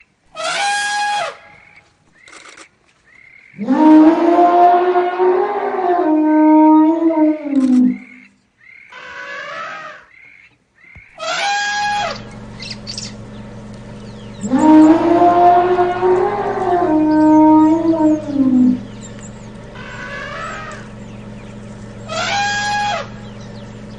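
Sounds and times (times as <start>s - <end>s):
elephant trumpeting: 0.3s - 1.7s, 3.6s - 8.1s, 11.2s - 23.9s
steady low hum: 11.1s - 23.9s.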